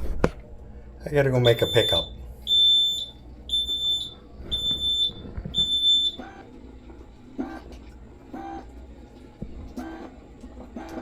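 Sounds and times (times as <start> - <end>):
electronic beeper beeps: 1.4 - 6.3.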